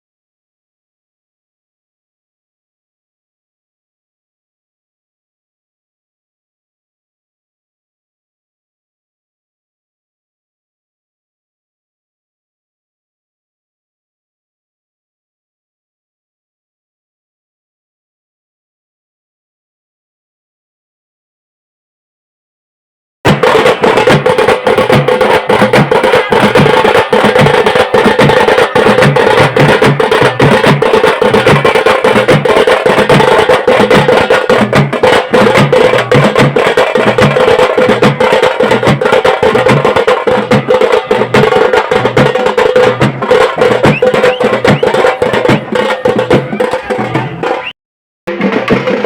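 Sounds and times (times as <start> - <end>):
fast drumbeats: 23.3 - 49.0.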